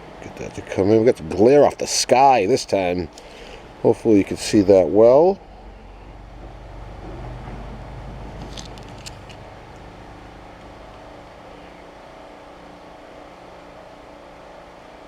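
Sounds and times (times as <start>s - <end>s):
vehicle engine running: 3.3s - 12.2s.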